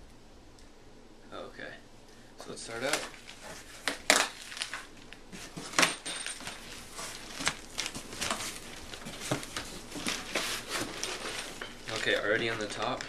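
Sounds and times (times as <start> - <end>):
cardboard box rustling: 5.4 - 13.0.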